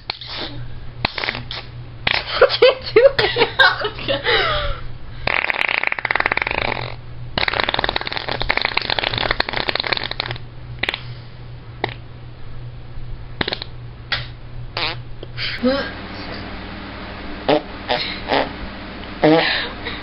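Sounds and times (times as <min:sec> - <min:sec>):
person blowing raspberries: 0:00.0 - 0:02.3, 0:05.2 - 0:11.2, 0:13.4 - 0:15.0, 0:17.4 - 0:18.6.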